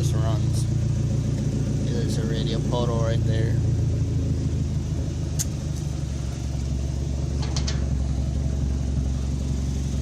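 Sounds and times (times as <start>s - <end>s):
truck engine idling: 0.0s - 10.0s
sharp clicks: 5.4s - 5.6s.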